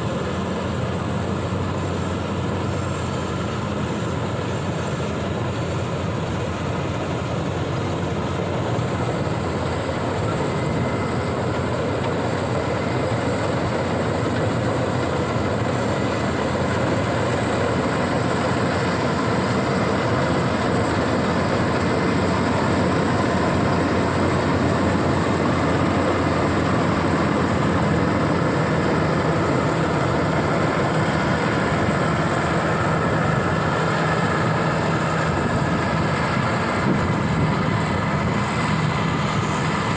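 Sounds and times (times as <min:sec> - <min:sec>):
combine harvester running: 0:00.0 - 0:39.9.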